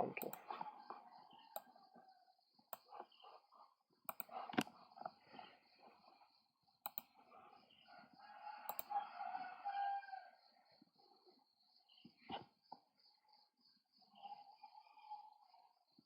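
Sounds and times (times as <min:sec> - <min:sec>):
computer mouse clicks: 0:00.2 - 0:00.7, 0:04.1 - 0:05.1, 0:06.8 - 0:07.1, 0:08.7 - 0:08.9.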